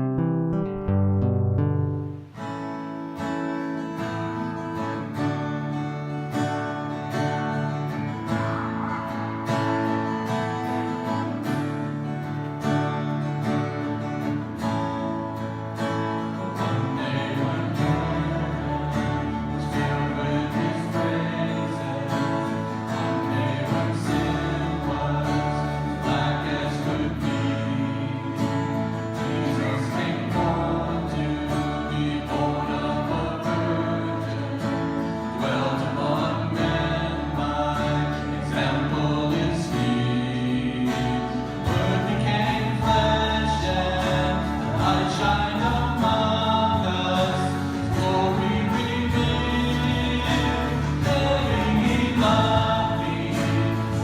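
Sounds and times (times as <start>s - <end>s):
bass line: 0.0s - 2.4s, 15.9s - 54.0s
acoustic guitar strumming: 0.0s - 54.0s
voices singing together: 7.1s - 11.9s, 16.1s - 54.0s.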